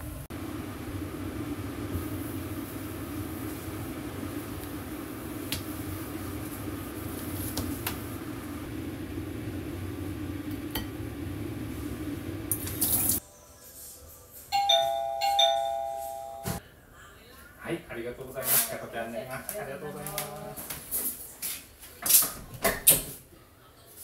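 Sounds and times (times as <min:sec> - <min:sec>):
two-tone electronic door chime: 0:14.5 - 0:16.6.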